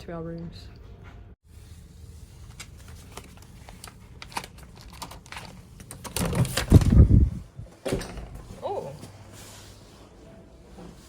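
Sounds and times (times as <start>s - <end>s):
keys clicking and rattling: 4.2s - 7.0s.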